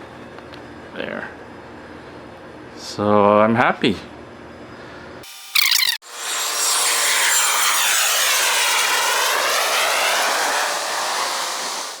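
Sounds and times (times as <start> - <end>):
jet aircraft passing overhead: 6.1 - 12.0.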